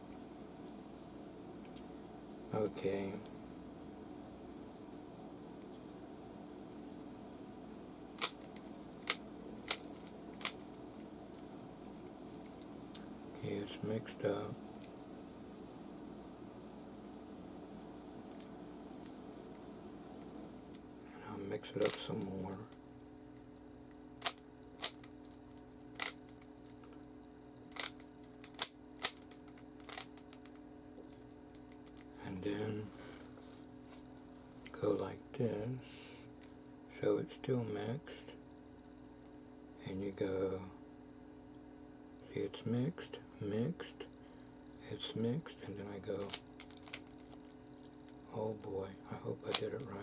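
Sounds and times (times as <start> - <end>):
faint steady hum: 0.0 - 50.0
plastic puzzle cube clicks: 8.2 - 10.6, 27.7 - 30.6.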